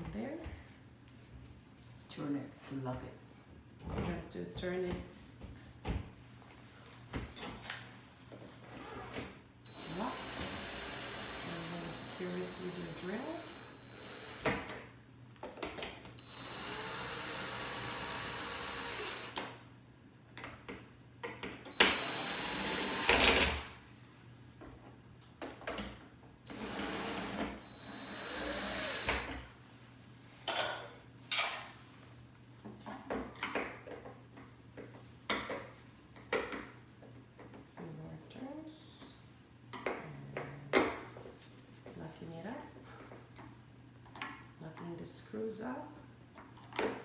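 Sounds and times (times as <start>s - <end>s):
power drill whining: 9.7s - 14.8s, 16.2s - 19.5s, 21.7s - 23.6s, 26.5s - 29.4s.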